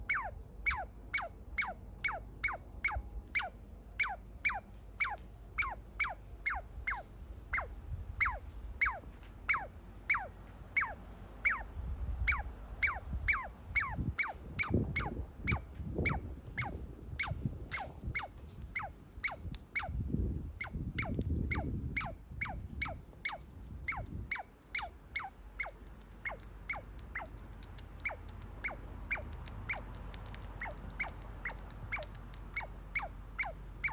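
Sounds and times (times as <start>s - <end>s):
baby squirrel squeaking: 0.0s - 33.9s
squirrel chewing on a walnut: 20.7s - 33.9s.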